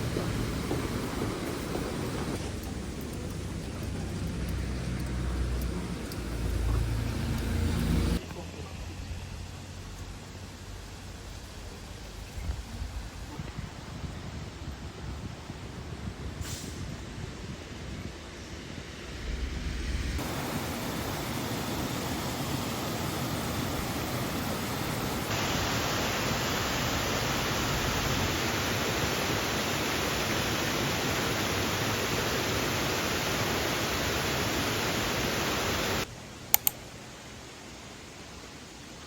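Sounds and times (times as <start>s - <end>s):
short clicks: 36.5s - 36.8s.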